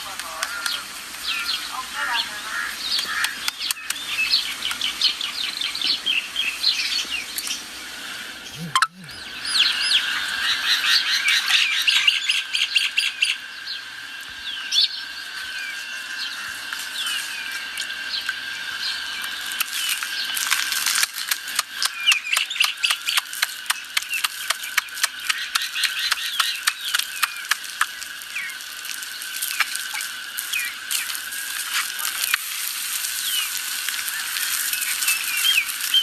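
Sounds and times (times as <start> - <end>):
birds chirping and calling: 0.0 - 20.7, 21.5 - 32.5, 33.1 - 36.0
sharp clicks: 2.9 - 4.0, 19.6 - 28.0
steady high-pitched drone: 8.2 - 20.4.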